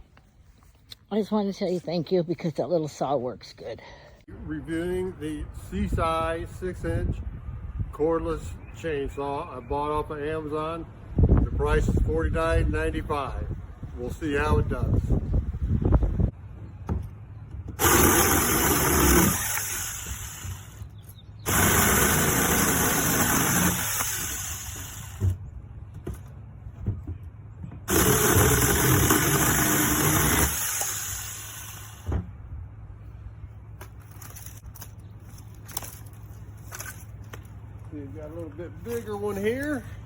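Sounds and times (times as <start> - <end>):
chainsaw cutting wood: 17.8 - 20.8, 21.4 - 25.4, 27.9 - 32.2.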